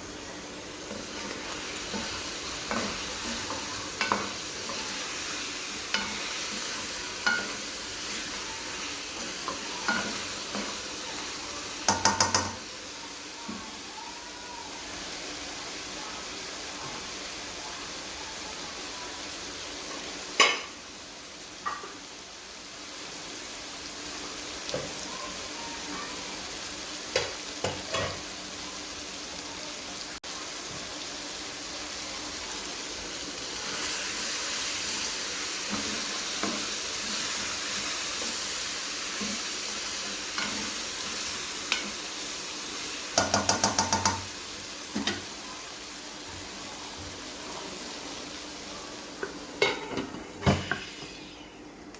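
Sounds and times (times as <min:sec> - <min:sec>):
food sizzling in a pan: 0:00.0 - 0:51.9
spoon scraping a pan: 0:00.9 - 0:10.8
spoon knocking against pan: 0:11.9 - 0:12.6, 0:20.4 - 0:20.7, 0:43.2 - 0:44.3
spoon tapping pan rim: 0:11.9 - 0:12.6, 0:43.2 - 0:44.2.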